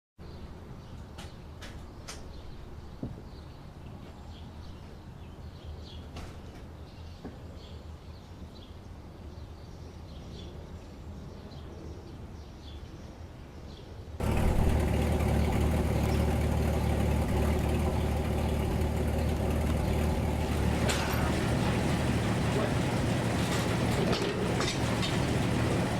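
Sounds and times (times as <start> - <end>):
low hum: 14.2 - 25.9
sawmill machinery running: 14.2 - 25.9.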